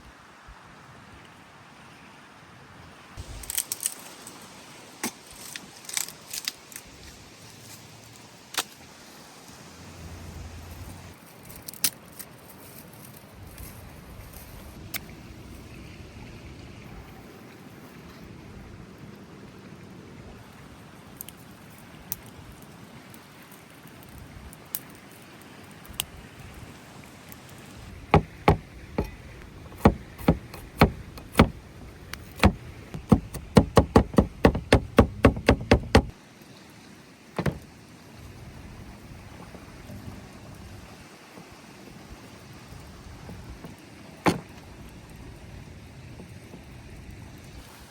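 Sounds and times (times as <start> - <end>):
sharp knocks: 28.1 - 31.6, 32.2 - 36.1, 37.4 - 37.6.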